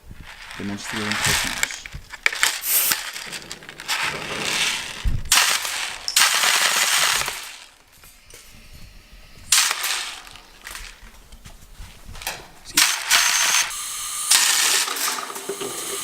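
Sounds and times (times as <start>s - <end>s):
air gun bursts of escaping air: 1.0s - 7.7s, 8.3s - 11.0s, 12.8s - 16.0s.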